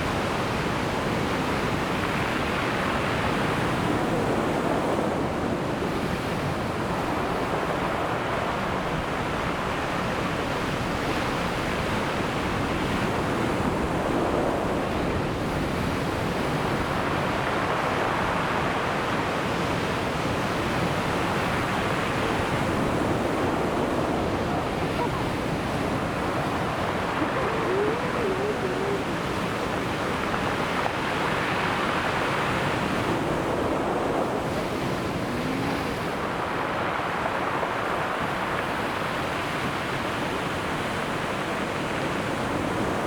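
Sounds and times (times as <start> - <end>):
ocean waves breaking on shore: 0.0 - 43.0
wind on microphone: 20.1 - 43.0.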